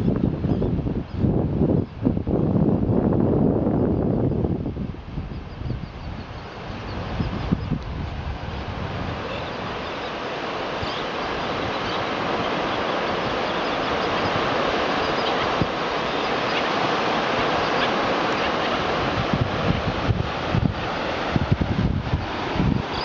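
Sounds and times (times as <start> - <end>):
wind: 0.0 - 23.0
surf rushing: 6.2 - 23.0
faint bird chirps: 10.8 - 14.4, 15.0 - 15.5.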